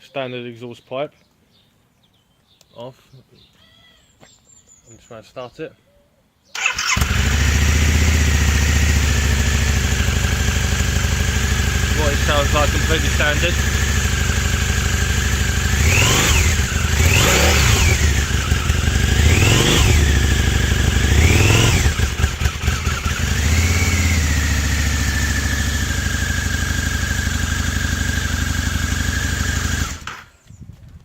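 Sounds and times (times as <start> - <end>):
motorcycle engine idling and revving: 6.6 - 30.4.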